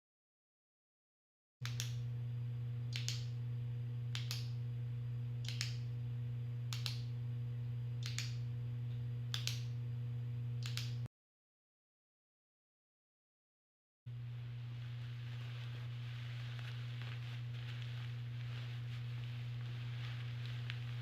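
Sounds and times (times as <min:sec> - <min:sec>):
steady low hum: 0:01.6 - 0:11.1, 0:14.1 - 0:21.0.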